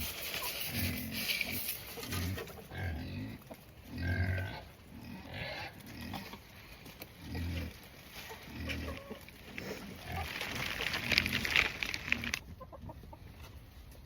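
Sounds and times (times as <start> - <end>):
crackling rustling noise: 0.0 - 2.7, 5.7 - 12.5
pigs grunting: 0.7 - 6.6, 7.2 - 12.4.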